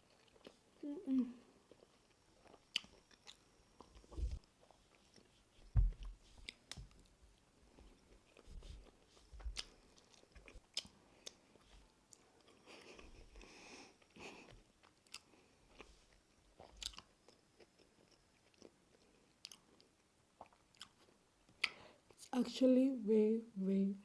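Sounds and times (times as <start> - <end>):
person chewing food: 0.0 - 0.8, 1.5 - 22.2
mouth clicks and smacks: 20.4 - 21.8.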